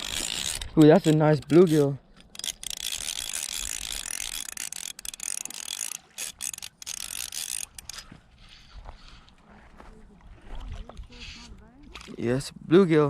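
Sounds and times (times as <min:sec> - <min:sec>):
fishing reel clicking and whirring: 0:00.0 - 0:08.7.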